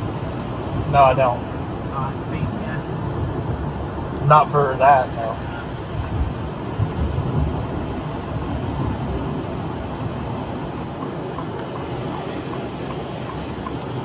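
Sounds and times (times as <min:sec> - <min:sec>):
car road and engine noise: 0:00.0 - 0:14.0
faint regular ticking: 0:10.8 - 0:14.0.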